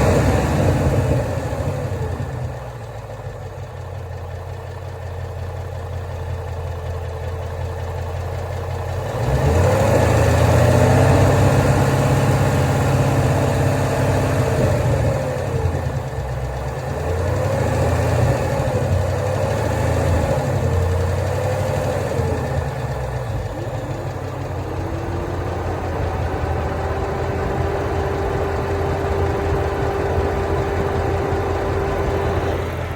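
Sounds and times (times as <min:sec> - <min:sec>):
car engine revving: 0:09.0 - 0:16.1, 0:16.7 - 0:32.9.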